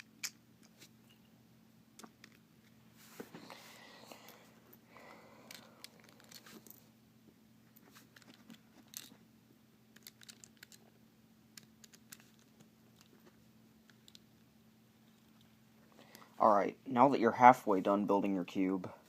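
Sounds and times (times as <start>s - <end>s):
plastic cube pieces clicking: 0.0s - 0.7s, 9.9s - 10.9s, 11.6s - 13.1s.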